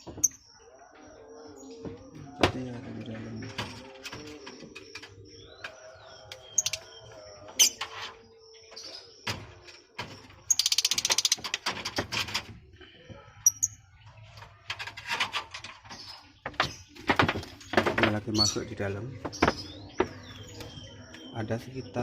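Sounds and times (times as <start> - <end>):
birds chirping: 0.0 - 22.0
scattered knocks: 15.2 - 18.5, 19.2 - 20.8.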